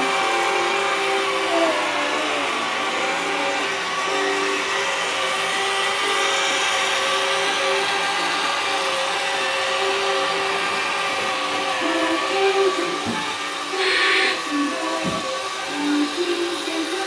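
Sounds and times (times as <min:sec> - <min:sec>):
toy train motor whirring: 0:00.0 - 0:17.0.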